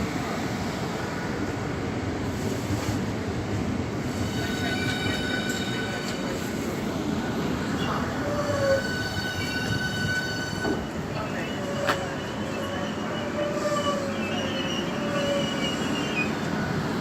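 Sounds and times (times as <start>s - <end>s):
train rumbling: 0.0s - 17.0s
high steady squeal: 8.2s - 16.6s.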